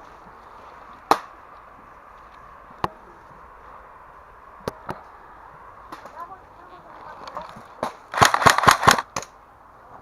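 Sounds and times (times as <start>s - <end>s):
airsoft gun shots: 7.8s - 9.3s.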